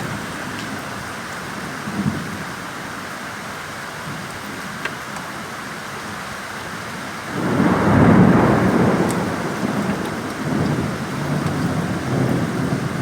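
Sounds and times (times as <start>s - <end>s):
heavy rain falling: 0.0s - 13.0s
thunder rolling: 7.3s - 13.0s.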